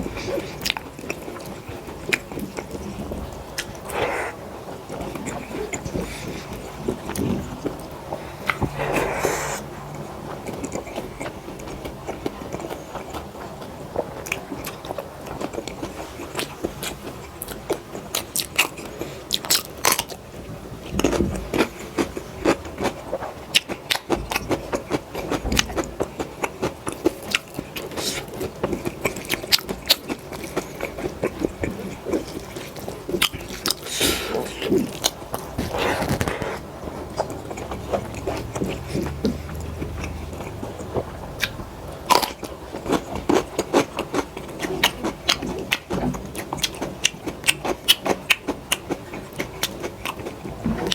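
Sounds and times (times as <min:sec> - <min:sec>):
person chewing with mouth smacks: 0:21.0 - 0:50.9.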